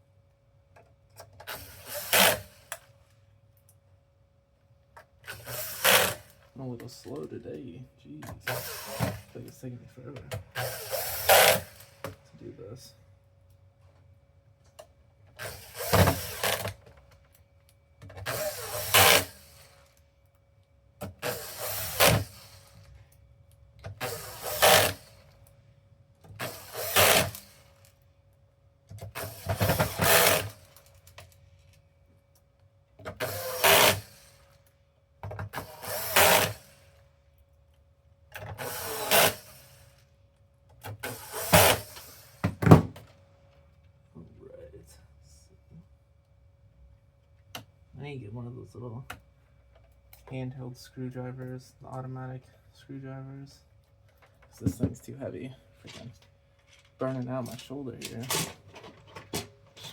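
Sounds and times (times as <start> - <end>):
power drill driving screws: 1.4 - 2.9, 5.2 - 6.4, 8.3 - 9.4, 10.3 - 12.2, 15.3 - 16.9, 18.2 - 19.9, 21.0 - 22.9, 23.9 - 25.4, 26.3 - 27.9, 29.0 - 31.2, 33.0 - 34.6, 35.5 - 37.0, 38.4 - 40.0, 40.8 - 42.8.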